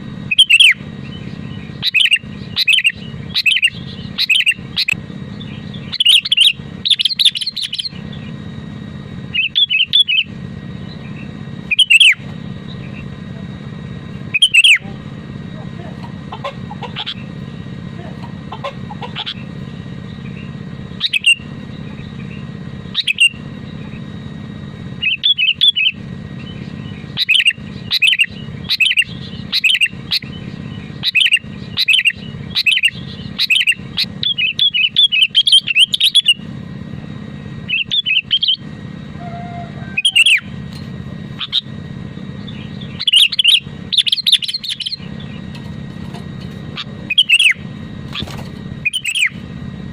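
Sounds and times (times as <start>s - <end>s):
low background hum: 0.0s - 49.9s
bird chirping: 0.3s - 8.5s, 9.3s - 13.1s, 14.1s - 14.9s, 16.2s - 17.8s, 18.5s - 24.1s, 25.0s - 36.4s, 37.6s - 40.6s, 41.3s - 49.5s.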